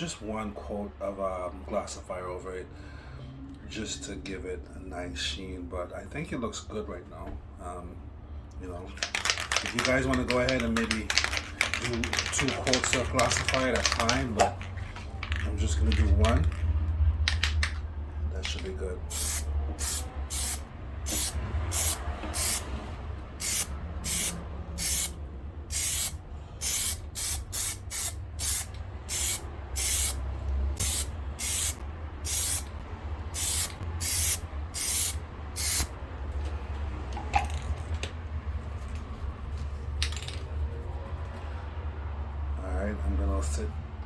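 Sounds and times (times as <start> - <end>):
aerosol can spraying in bursts: 19.1 - 22.7, 23.4 - 30.2, 30.8 - 32.7, 33.4 - 35.9.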